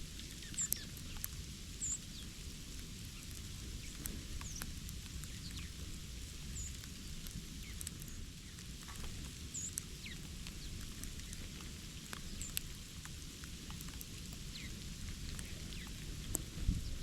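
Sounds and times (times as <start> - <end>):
small birds chirping: 0.2 - 2.4, 3.1 - 12.8, 14.3 - 17.0.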